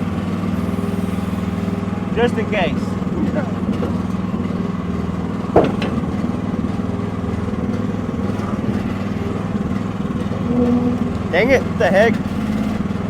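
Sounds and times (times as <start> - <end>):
small engine running: 0.0 - 13.0
brief sharp squeal: 10.4 - 11.4.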